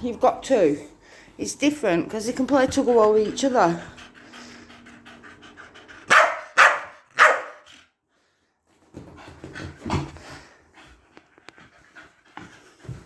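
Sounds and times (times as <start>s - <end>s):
dog panting: 0.2s - 8.0s, 9.0s - 13.0s
dog barking: 6.1s - 7.6s.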